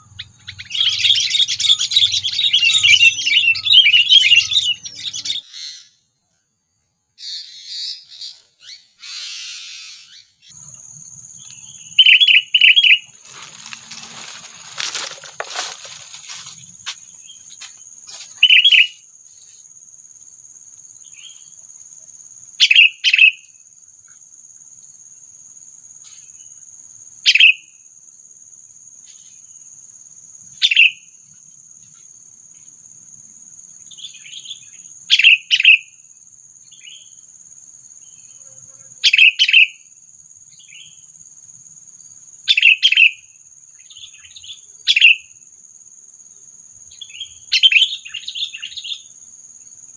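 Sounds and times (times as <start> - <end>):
bulbul calling: 0.0 - 5.9, 11.4 - 16.0
high insect drone: 0.0 - 49.9.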